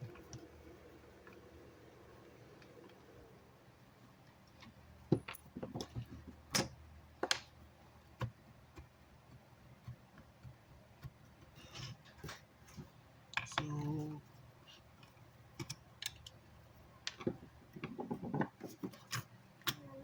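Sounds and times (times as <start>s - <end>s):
small metal parts clicking: 15.0s - 16.4s.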